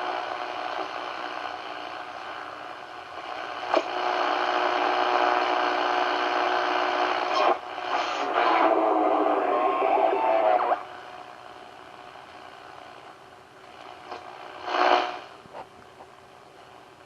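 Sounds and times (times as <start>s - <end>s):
radio static and hiss: 0.0s - 17.0s
steady radio tones: 7.0s - 11.5s
sharp radio crackles: 7.2s - 11.0s.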